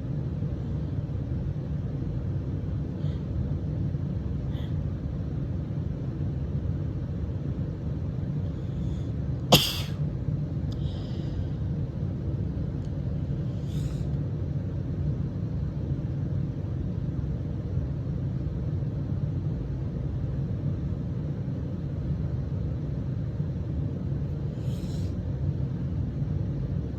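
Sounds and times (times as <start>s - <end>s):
low background rumble: 0.0s - 26.9s
faint short breaths: 10.7s - 11.7s, 13.4s - 14.2s, 24.5s - 25.2s.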